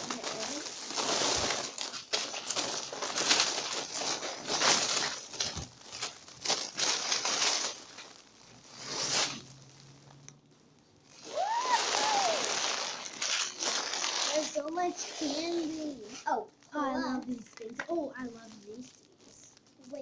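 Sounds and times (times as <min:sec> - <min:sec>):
candy wrappers rustling: 0:00.0 - 0:10.3, 0:10.9 - 0:20.0
short rising-and-falling cry: 0:11.2 - 0:13.0.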